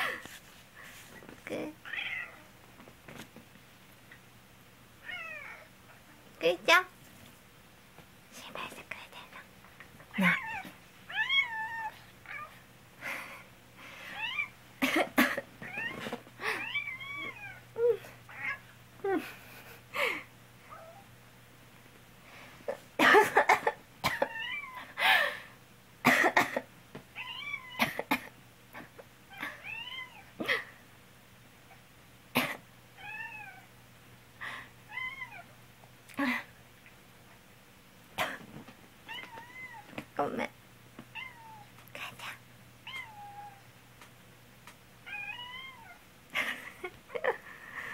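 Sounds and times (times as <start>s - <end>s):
person coughing: 26.0s - 26.7s, 32.4s - 32.6s
cat meowing: 45.1s - 46.0s.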